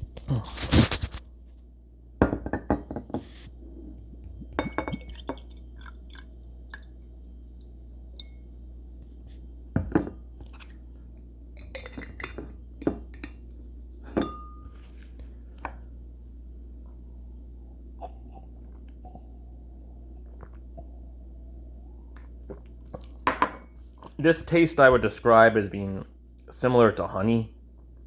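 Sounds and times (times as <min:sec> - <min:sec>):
low steady hum: 0:00.0 - 0:28.0
glassware clinking: 0:02.2 - 0:03.0, 0:04.5 - 0:05.9, 0:09.8 - 0:10.2, 0:11.6 - 0:13.4, 0:14.1 - 0:14.8, 0:23.2 - 0:23.8.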